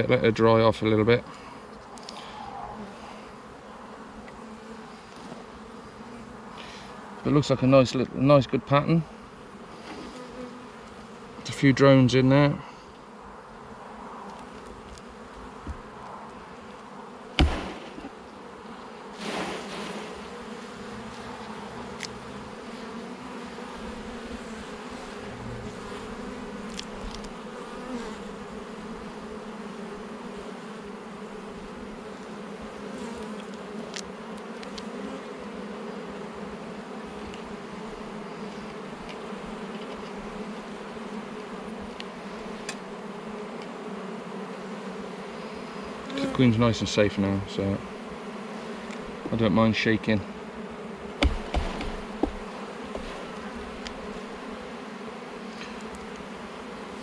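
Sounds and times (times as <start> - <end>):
bees humming: 0.0 - 57.0
sharp knock: 17.4 - 18.1, 51.2 - 52.4.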